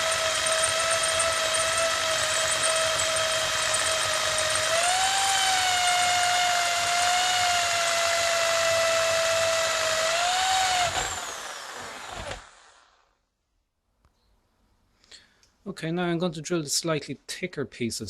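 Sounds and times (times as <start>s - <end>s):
electric drill drilling steel: 0.0s - 13.1s.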